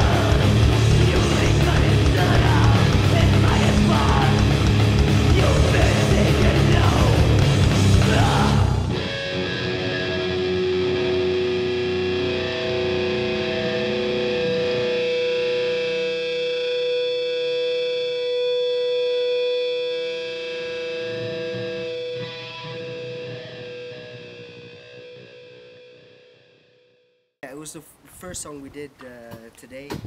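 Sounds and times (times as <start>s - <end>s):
distorted electric guitar drones: 0.0s - 27.2s.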